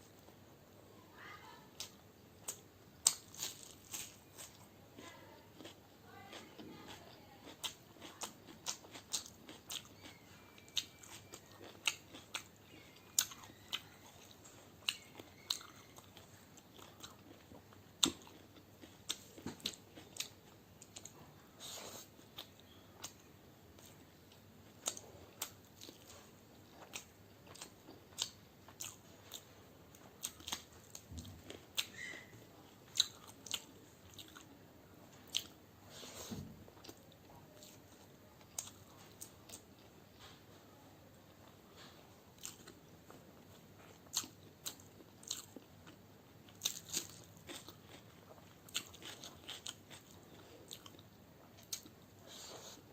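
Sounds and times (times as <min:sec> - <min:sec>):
chewing and crunching: 0:01.8 - 0:34.6, 0:35.2 - 0:40.6, 0:41.2 - 0:52.9.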